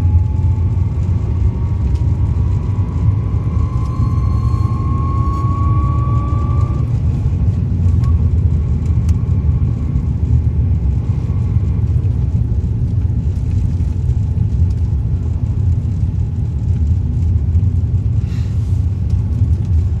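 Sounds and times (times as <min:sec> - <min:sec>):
car engine low rumble: 0:00.0 - 0:20.0
thin high whistle: 0:03.2 - 0:06.8.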